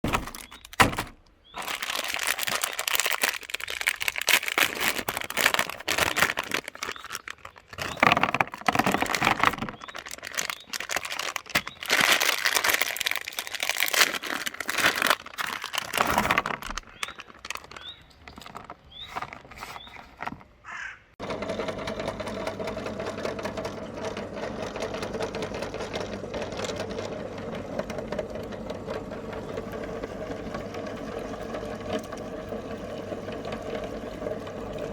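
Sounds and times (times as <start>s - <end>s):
electric meat grinder motor humming: 21.2s - 34.9s.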